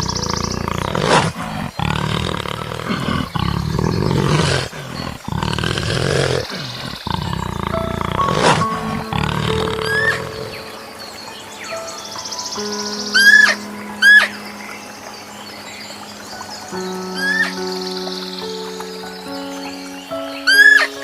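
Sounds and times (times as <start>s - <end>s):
large animal roaring: 0.0s - 10.7s
background music: 7.1s - 21.0s.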